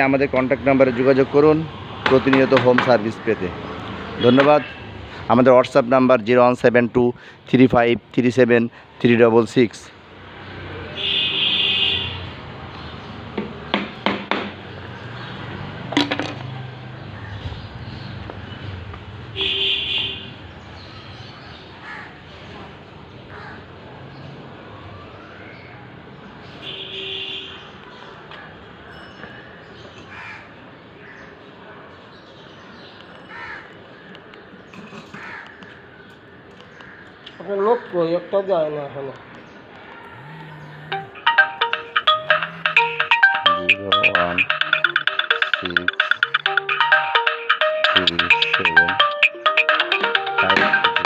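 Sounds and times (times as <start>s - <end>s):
crow cawing: 30.1s - 31.3s, 33.3s - 33.7s, 35.1s - 35.8s.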